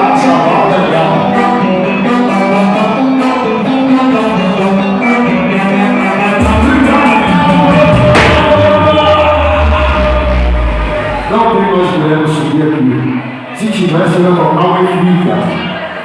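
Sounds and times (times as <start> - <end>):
live band music: 1.5 - 12.1
heavy bass: 6.4 - 13.2.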